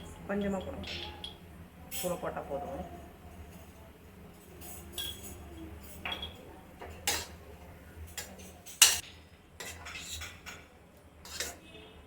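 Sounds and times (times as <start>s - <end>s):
spoon clinking against pan: 4.6s - 7.4s.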